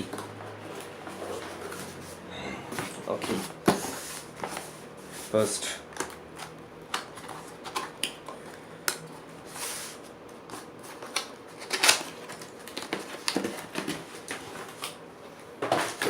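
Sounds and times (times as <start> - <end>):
packaging rustle: 9.5 - 15.0.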